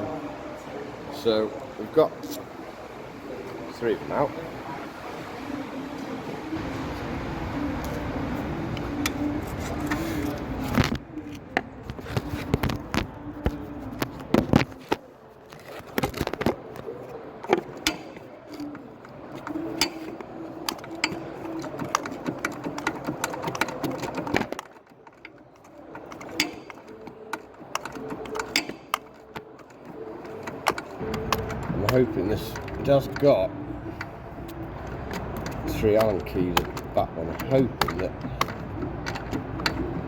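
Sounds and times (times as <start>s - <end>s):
metal clicks and taps: 17.4s - 33.3s, 34.0s - 40.0s.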